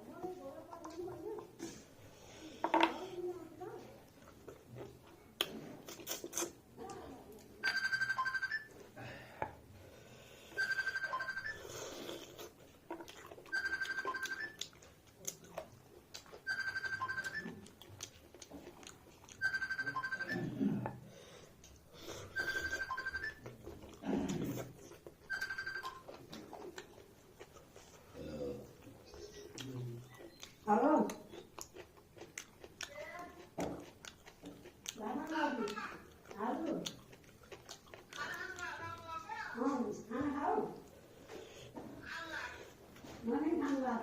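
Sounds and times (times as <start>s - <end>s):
phone ringing electronic tone: 7.6s - 8.8s, 10.6s - 11.7s, 13.5s - 14.6s, 16.5s - 17.6s, 19.4s - 20.6s, 22.4s - 23.4s, 25.3s - 26.1s.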